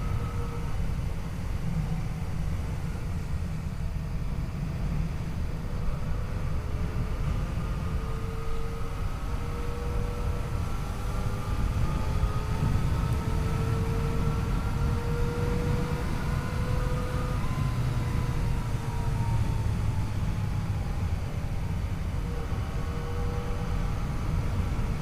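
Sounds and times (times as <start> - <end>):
wind rumble on microphone: 0.0 - 25.0.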